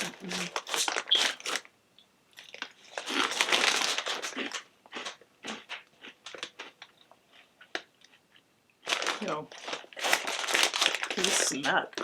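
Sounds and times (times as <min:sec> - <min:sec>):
plastic snack bag crinkling: 0:00.0 - 0:01.7, 0:02.4 - 0:12.0.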